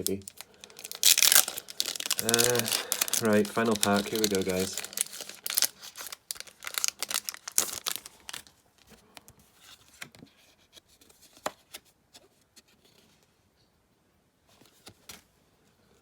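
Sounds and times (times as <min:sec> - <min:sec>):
card pack wrapper tearing: 0:00.0 - 0:08.5
faint crinkles and clicks: 0:00.0 - 0:11.4.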